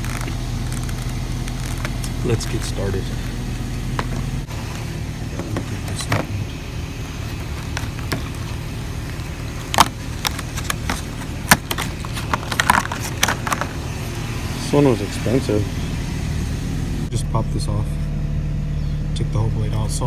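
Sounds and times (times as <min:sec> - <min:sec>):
steady low hum: 0:00.0 - 0:20.0
sharp plastic clicks: 0:07.3 - 0:13.8.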